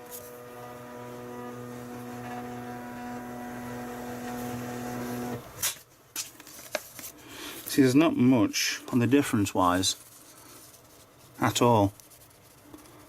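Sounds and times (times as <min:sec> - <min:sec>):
label printer motor whine: 0:00.0 - 0:05.6.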